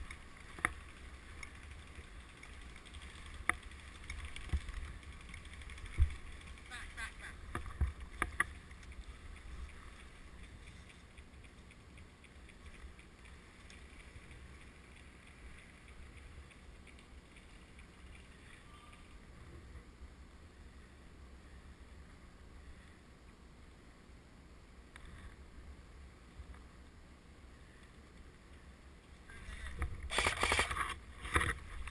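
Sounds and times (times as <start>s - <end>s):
small ticks: 0.0s - 19.5s, 27.6s - 31.9s.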